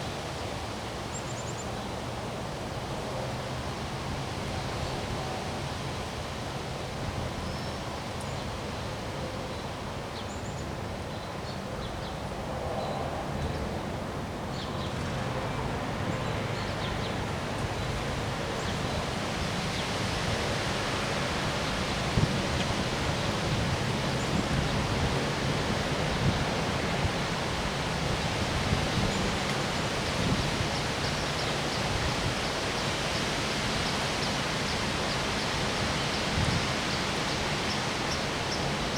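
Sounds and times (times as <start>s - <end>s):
wind blowing: 12.4s - 38.9s.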